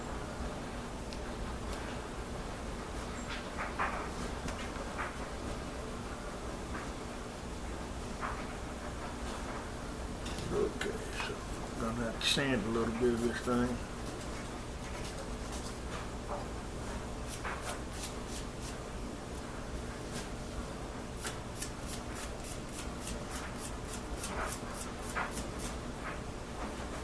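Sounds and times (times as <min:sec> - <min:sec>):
sandpaper scratching wood: 0:17.2 - 0:18.8, 0:21.2 - 0:25.8.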